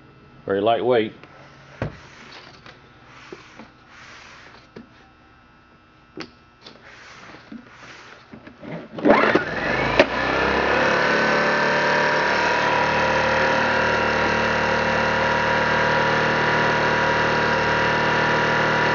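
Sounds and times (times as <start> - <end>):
generator engine starting and running: 6.8 - 18.9.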